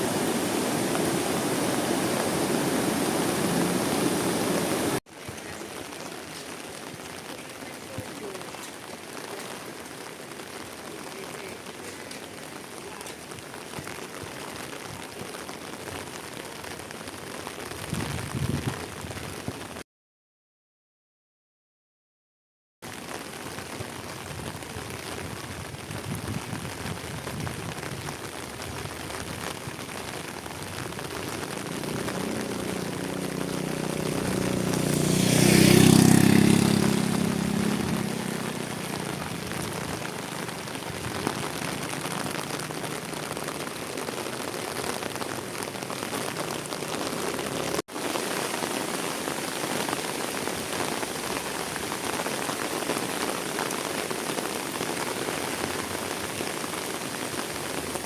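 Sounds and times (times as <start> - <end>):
steady rain falling: 0.0 - 19.8, 22.8 - 58.0
vehicle passing by: 31.5 - 39.6.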